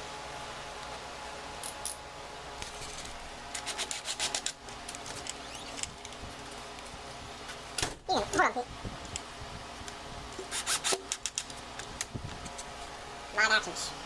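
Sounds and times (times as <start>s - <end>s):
screws rasping into wood: 3.6s - 4.5s, 10.4s - 11.2s.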